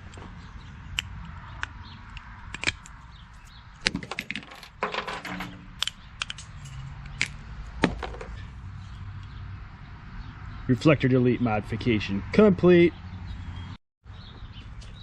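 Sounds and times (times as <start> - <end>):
small hard parts clicking: 0.9 - 3.0, 3.8 - 7.4.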